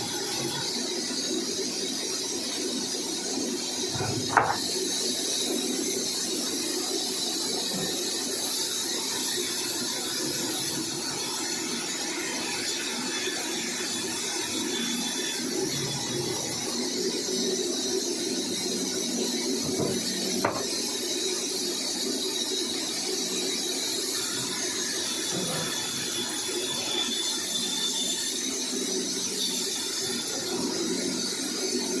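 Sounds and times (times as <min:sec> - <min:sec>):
sawmill saw running: 0:00.0 - 0:32.0.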